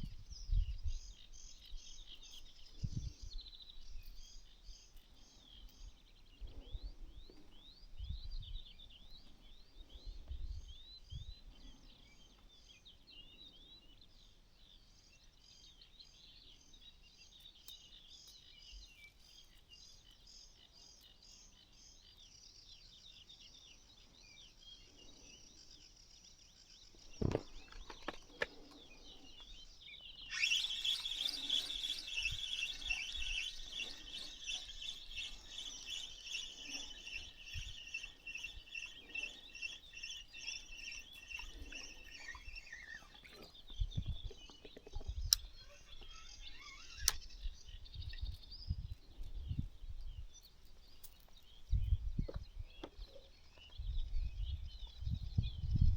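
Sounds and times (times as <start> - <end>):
birds chirping: 0.0 - 55.9
dense high chirring: 30.3 - 43.2.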